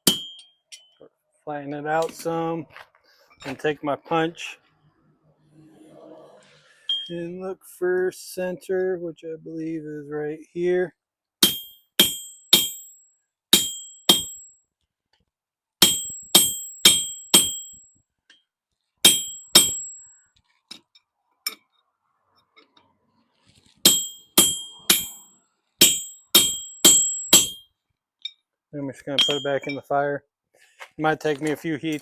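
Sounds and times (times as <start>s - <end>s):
hammer striking punch on hot steel: 0.0s - 0.5s, 11.4s - 14.5s, 15.8s - 17.8s, 19.1s - 20.0s, 23.8s - 25.2s, 25.8s - 27.6s.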